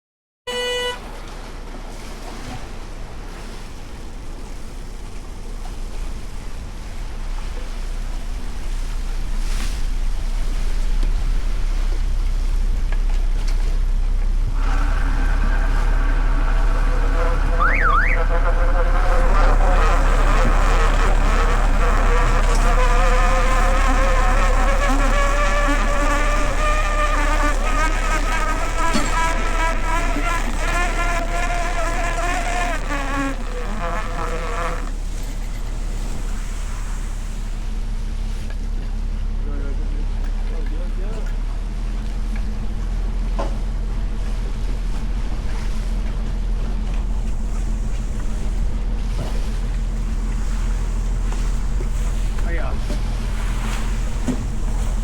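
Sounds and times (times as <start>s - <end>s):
boat engine rumble: 0.4s - 55.0s
short electronic beep: 0.5s - 1.0s, 17.6s - 18.2s
motor droning whine: 0.5s - 55.0s
wind and water noise: 0.5s - 55.0s.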